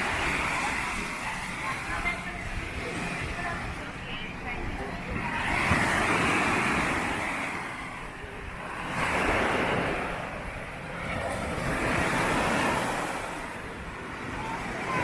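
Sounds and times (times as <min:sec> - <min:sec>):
waves breaking on a beach: 0:00.0 - 0:15.0
wind buffeting microphone: 0:00.0 - 0:15.0.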